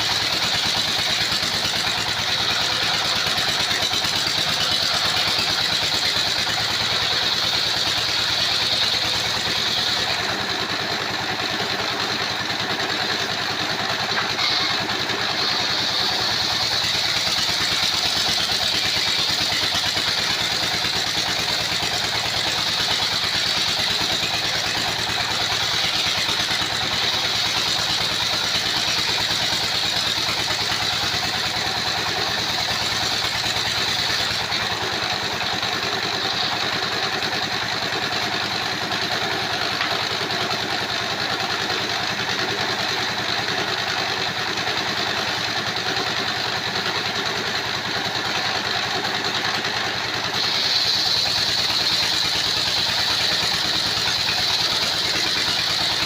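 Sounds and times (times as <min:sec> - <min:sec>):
circular saw engine drone: 0:14.0 - 0:36.9, 0:48.8 - 0:56.0
high-pitched saw hiss: 0:14.1 - 0:20.0, 0:50.3 - 0:56.0.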